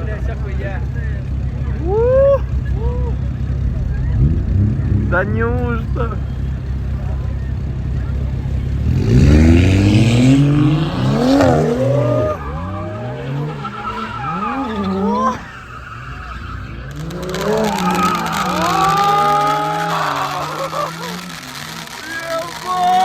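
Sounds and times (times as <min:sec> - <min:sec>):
car engine revving: 0:00.0 - 0:23.0
tyres squealing on tarmac: 0:05.2 - 0:23.0.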